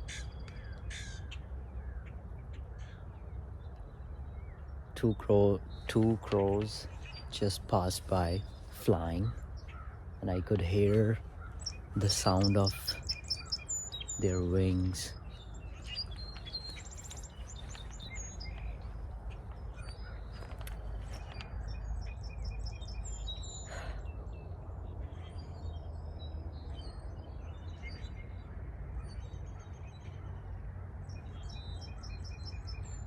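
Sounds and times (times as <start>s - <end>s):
low wind rumble: 0.0s - 33.0s
songbirds chirping and twittering: 0.0s - 33.0s.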